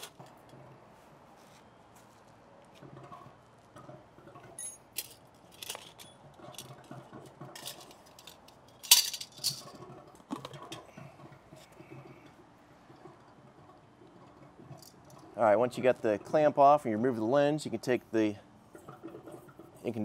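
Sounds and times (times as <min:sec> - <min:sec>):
metal clamp ring clinking: 0:04.6 - 0:06.2.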